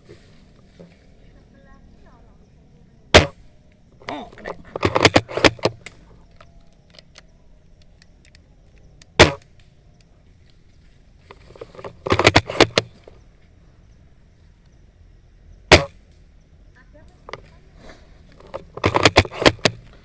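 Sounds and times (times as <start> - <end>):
airsoft gun shots: 3.1 - 3.4, 9.2 - 9.5, 15.7 - 16.0
distant airsoft shots: 3.1 - 3.4.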